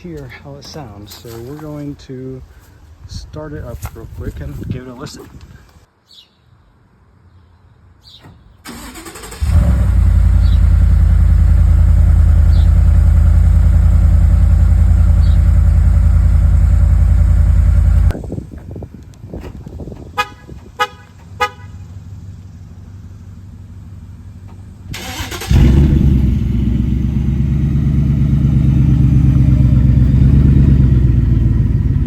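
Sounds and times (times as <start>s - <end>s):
truck engine starting and idling: 8.5s - 32.0s.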